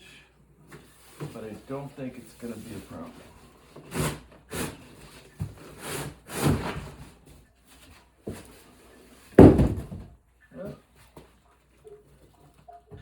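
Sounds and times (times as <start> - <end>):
cardboard box rubbing and scraping: 0.8 - 9.5.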